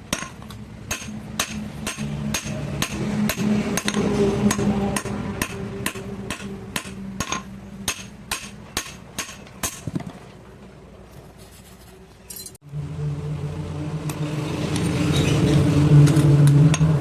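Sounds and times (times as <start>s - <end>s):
hammer striking metal: 0.1s - 10.0s.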